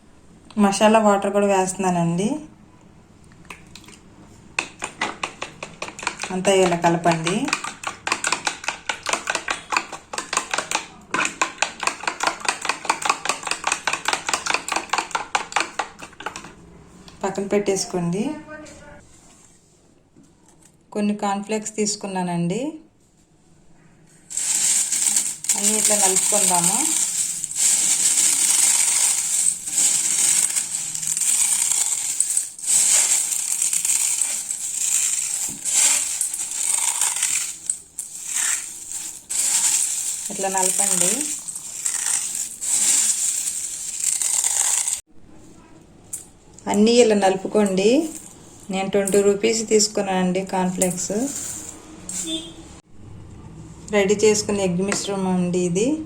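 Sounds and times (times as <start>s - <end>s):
cornflakes crushed by hand: 24.3s - 45.0s.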